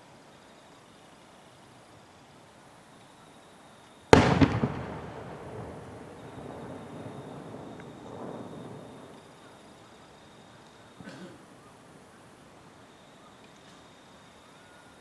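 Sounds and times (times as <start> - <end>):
firework bang: 4.2 - 9.4
firework crackling: 4.2 - 10.4
rolling echo: 4.2 - 11.2.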